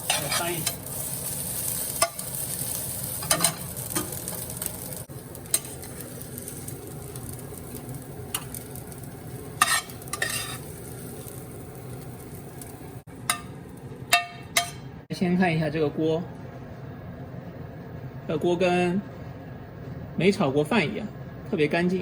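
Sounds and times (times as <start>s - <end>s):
spatula scraping a pan: 0.0s - 3.6s, 9.6s - 10.7s
rice sizzling in a hot pan: 0.0s - 15.0s.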